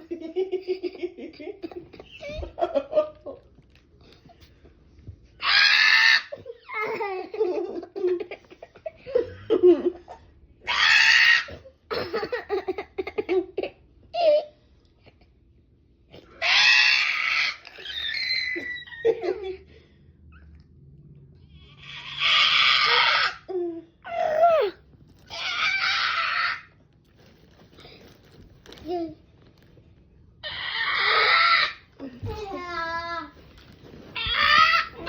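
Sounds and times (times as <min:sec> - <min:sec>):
people laughing and giggling: 0:00.0 - 0:03.6
person screeching like a bird: 0:16.4 - 0:19.0, 0:25.3 - 0:26.7, 0:30.4 - 0:31.9, 0:34.2 - 0:35.0.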